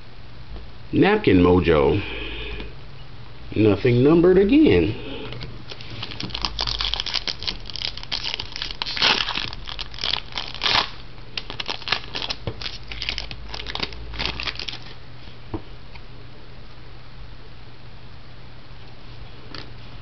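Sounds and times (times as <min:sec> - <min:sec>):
wrapper crinkling and tearing: 0:05.6 - 0:15.0.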